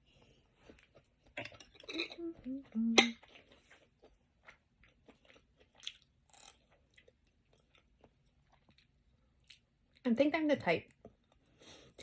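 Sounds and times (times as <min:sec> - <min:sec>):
person chewing: 0:00.5 - 0:10.0.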